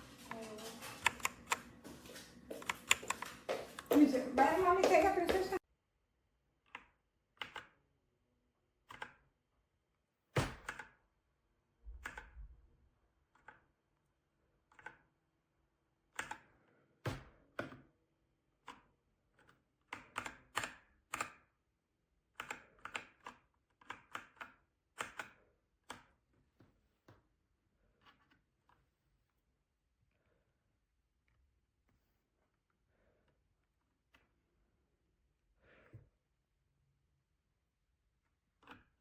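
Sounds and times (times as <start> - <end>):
mechanical keyboard keys clacking: 0.2 - 1.7, 2.6 - 3.5.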